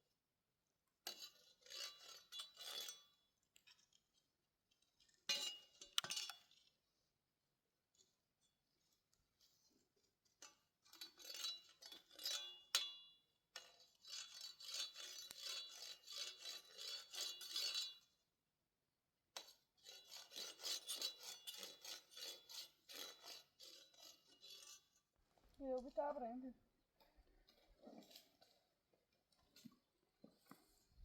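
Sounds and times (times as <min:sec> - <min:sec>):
rhythmic scraping on hard surface: 0:14.1 - 0:17.9, 0:19.8 - 0:25.0.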